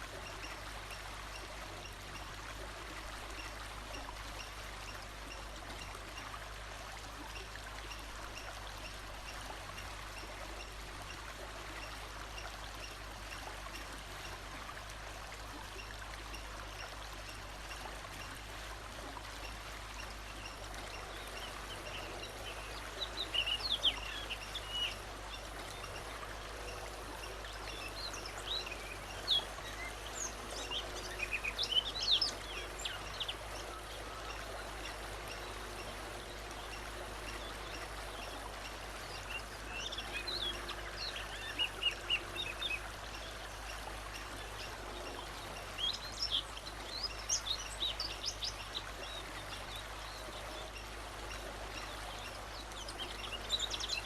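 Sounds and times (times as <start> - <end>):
steady background hiss: 0.0 - 54.0.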